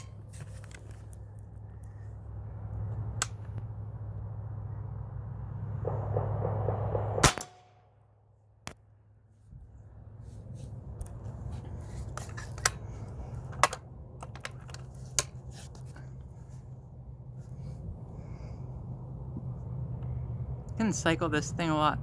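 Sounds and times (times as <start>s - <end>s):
air rifle firing crack: 5.8s - 7.8s.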